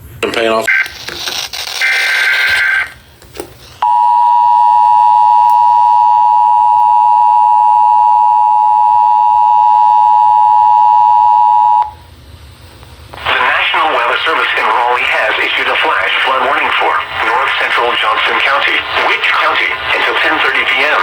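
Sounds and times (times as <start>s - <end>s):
steady two-tone alert signal: 3.8s - 12.0s.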